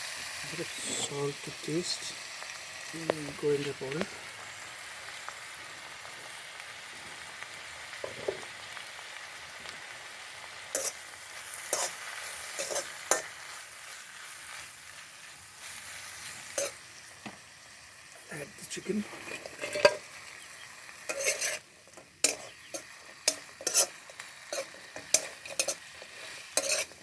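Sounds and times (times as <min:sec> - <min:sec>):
greens sizzling in hot oil: 0:00.0 - 0:27.0
spatula knocking and scraping pan: 0:19.1 - 0:20.1, 0:21.1 - 0:27.0.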